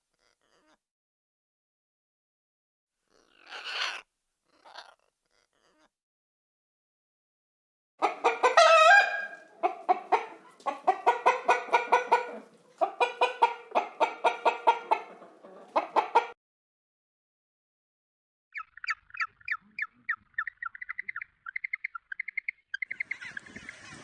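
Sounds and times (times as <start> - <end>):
chicken clucking: 8.0 - 16.4.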